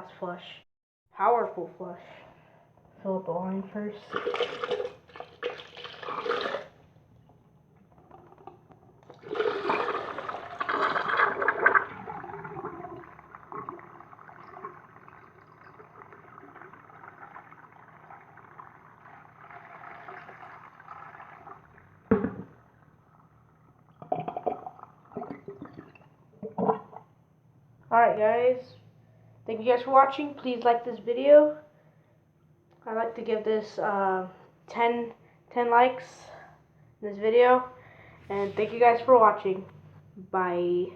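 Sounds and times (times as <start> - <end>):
toilet flushing: 3.9 - 6.8, 7.9 - 27.0
water gurgling down drain: 4.0 - 6.8, 7.8 - 27.0.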